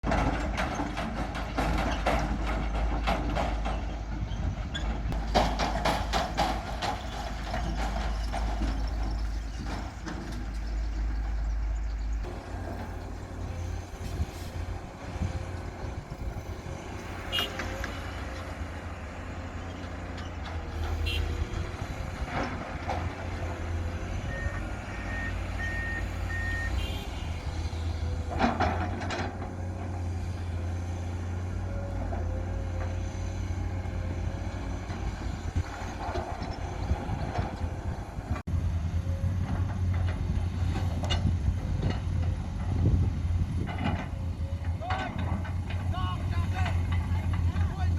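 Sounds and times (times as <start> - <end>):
metallic clanking and knocking: 0.0 - 11.5, 27.5 - 30.2
diesel excavator engine: 0.0 - 47.9
reversing alarm beeping: 24.3 - 26.8.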